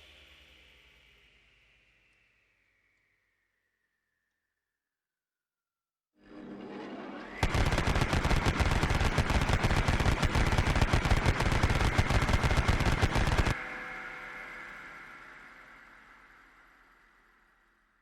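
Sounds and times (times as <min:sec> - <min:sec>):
rotary machine gun firing: 0:07.4 - 0:13.6
high whine: 0:07.4 - 0:17.3.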